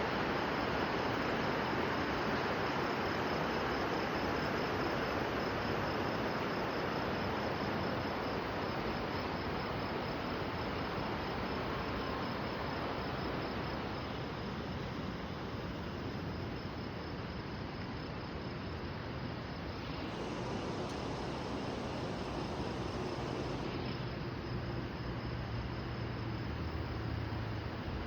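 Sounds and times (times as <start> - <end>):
crickets chirring: 0.1 - 28.0
river water rushing: 19.8 - 23.7.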